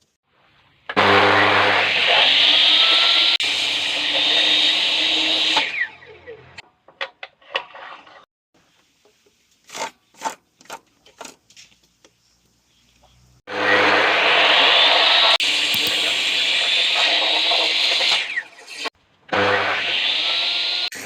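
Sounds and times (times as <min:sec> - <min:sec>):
tool spinning down whine: 0:15.5 - 0:17.1
power tool running: 0:15.7 - 0:16.5.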